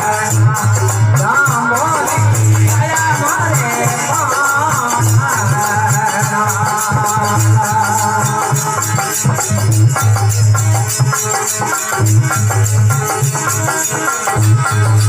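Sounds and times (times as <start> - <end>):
hand percussion: 0.0 - 15.0
held folk melody: 0.0 - 15.0
steady drum beat: 0.0 - 15.0.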